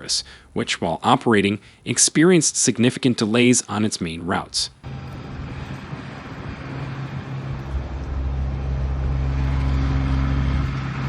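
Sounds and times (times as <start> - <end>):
constant hiss: 0.0 - 8.3
vehicle engine running: 4.8 - 11.0.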